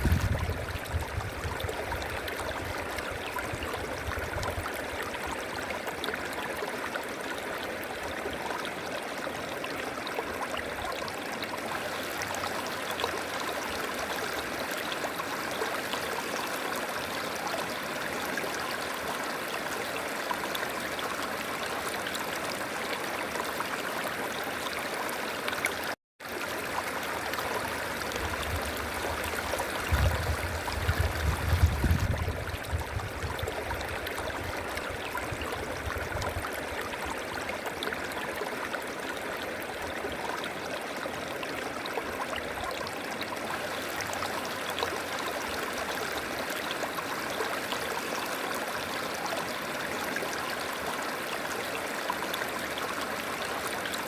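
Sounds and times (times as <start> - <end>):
river water flowing over rocks: 33.4 - 54.0.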